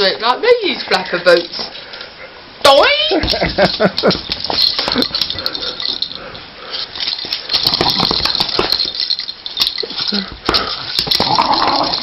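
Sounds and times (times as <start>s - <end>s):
dog chewing and shaking slipper: 3.2s - 12.0s.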